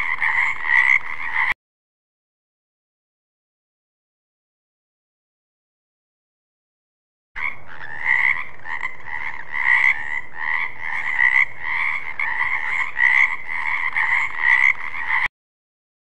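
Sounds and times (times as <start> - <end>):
frogs croaking: 0.0 - 1.6, 7.4 - 15.3.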